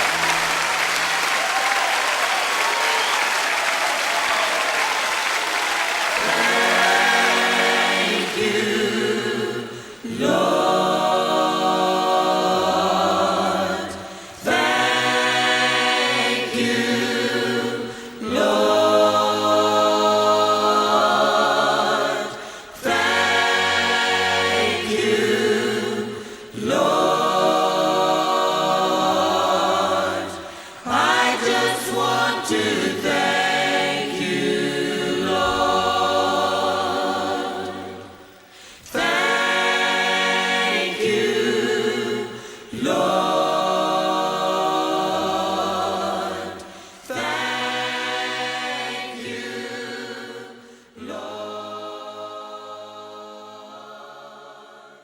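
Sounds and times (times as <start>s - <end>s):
choir singing: 0.0s - 55.0s
singers breathing: 9.6s - 10.1s, 14.0s - 14.4s, 17.8s - 18.2s, 22.3s - 22.8s, 26.2s - 26.6s, 30.4s - 30.9s, 38.4s - 39.0s, 42.3s - 42.8s, 46.6s - 47.1s, 50.5s - 51.0s.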